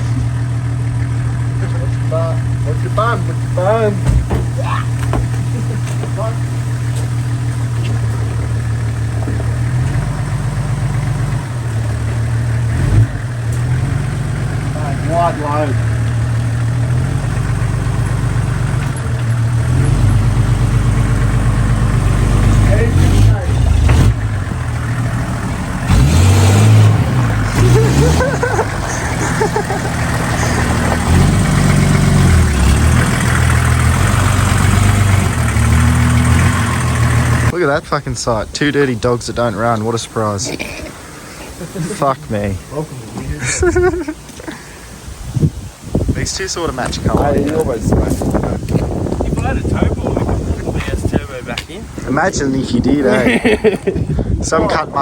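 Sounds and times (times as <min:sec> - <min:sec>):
car engine idling: 0:00.0 - 0:55.0
loud bump: 0:02.9 - 0:08.4, 0:22.8 - 0:28.8.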